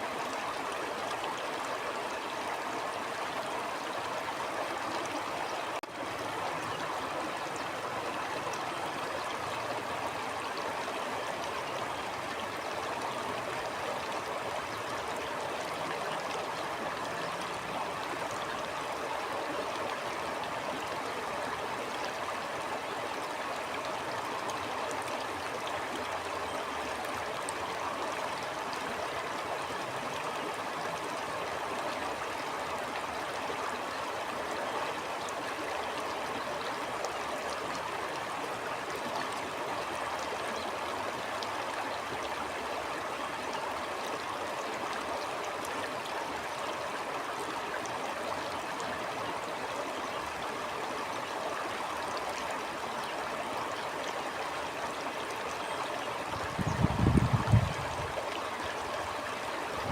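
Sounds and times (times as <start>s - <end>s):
stream flowing over stones: 0.0s - 59.9s.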